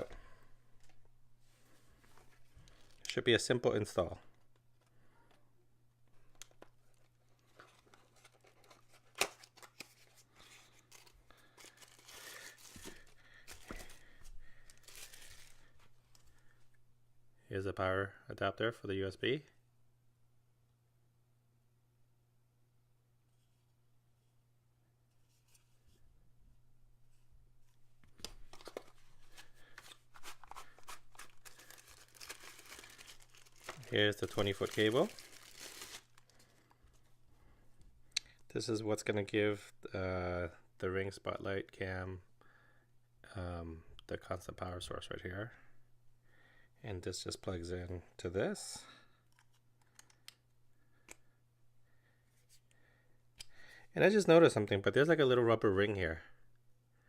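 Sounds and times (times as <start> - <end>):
small clicks of packaging: 6.3 - 14.0, 28.1 - 37.0, 49.2 - 51.3
packaging rustling and tearing: 6.4 - 16.3, 28.2 - 37.0.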